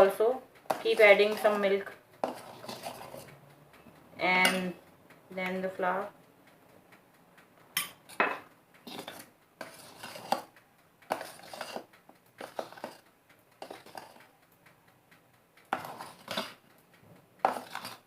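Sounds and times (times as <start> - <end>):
spatula scraping a mixing bowl: 0.7 - 3.4, 8.9 - 10.5, 11.1 - 13.0, 13.6 - 14.2, 15.7 - 16.6, 17.4 - 18.0.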